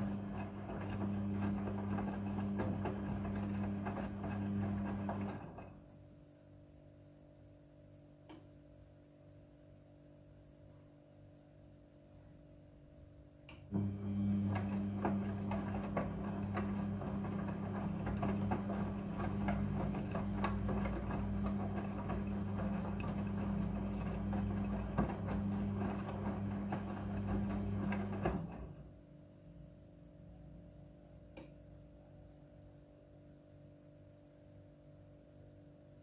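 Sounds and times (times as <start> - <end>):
washing machine motor humming: 0.0 - 5.8, 13.7 - 29.0.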